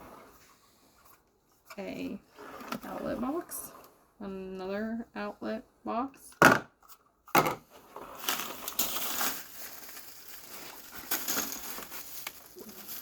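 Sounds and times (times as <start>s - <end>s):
packaging rustling and crinkling: 8.0s - 13.0s.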